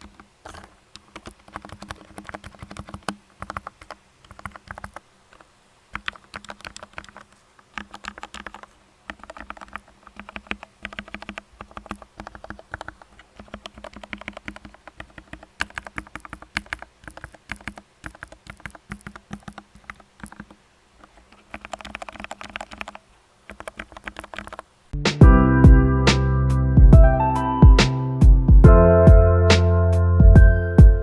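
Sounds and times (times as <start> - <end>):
mechanical keyboard clacks: 0.0 - 24.7
loud music: 25.0 - 31.0.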